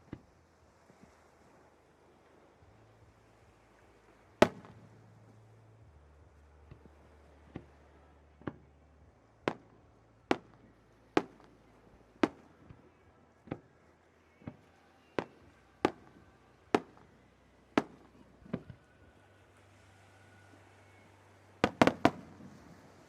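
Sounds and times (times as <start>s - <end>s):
fireworks bursting with echo: 4.2s - 5.4s, 9.4s - 23.0s.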